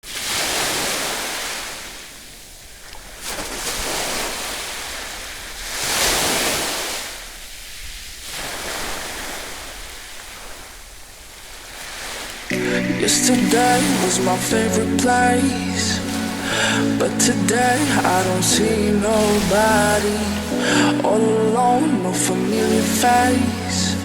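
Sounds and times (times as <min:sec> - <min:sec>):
ocean surf breaking: 0:03.3 - 0:07.3, 0:08.2 - 0:24.0.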